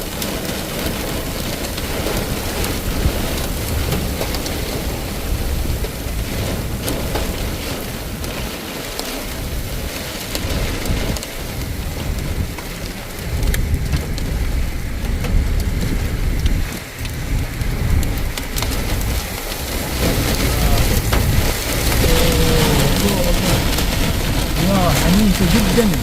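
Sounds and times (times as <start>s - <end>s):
heavy rain and hail: 0.0s - 26.0s
low rumble: 10.5s - 26.0s.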